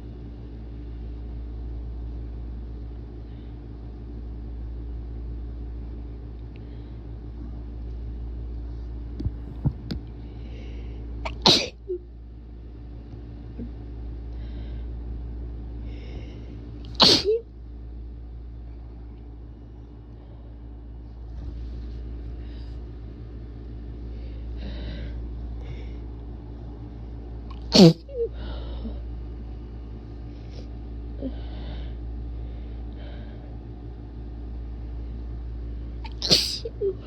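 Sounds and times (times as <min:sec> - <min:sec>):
steady low hum: 0:00.0 - 0:37.0
person sneezing: 0:11.3 - 0:11.8, 0:16.9 - 0:17.4, 0:27.5 - 0:28.2, 0:36.1 - 0:36.8
breathy inhales: 0:15.8 - 0:16.7, 0:24.0 - 0:26.1.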